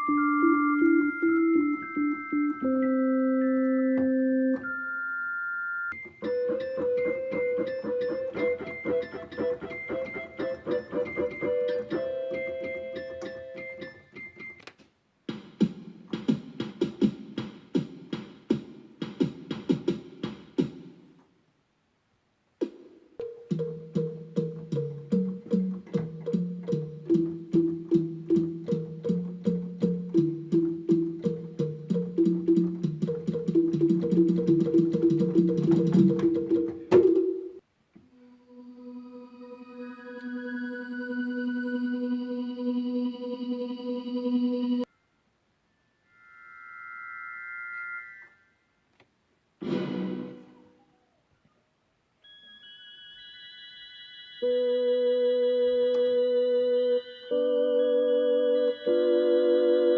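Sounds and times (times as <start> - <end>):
electronic keyboard rapid notes: 0.0 - 14.6, 23.2 - 37.6, 54.4 - 59.9.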